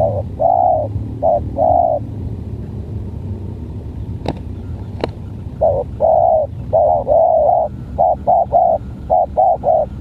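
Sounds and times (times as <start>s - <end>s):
dove cooing: 0.0s - 2.1s, 4.6s - 10.0s.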